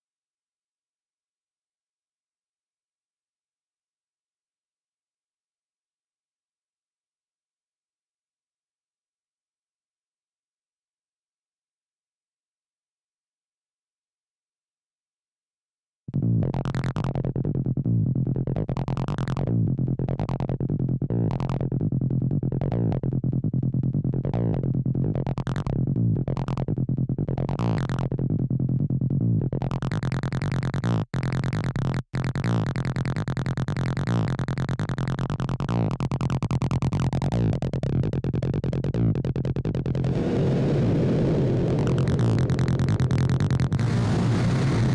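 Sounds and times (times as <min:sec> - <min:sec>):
acid electronic synthesizer pulse: 0:16.1 - 0:44.9.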